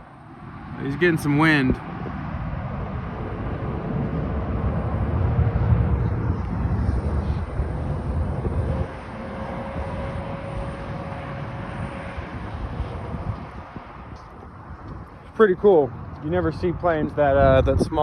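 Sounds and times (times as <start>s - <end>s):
small plane engine drone: 0.0s - 17.8s
wind on microphone: 0.0s - 18.0s.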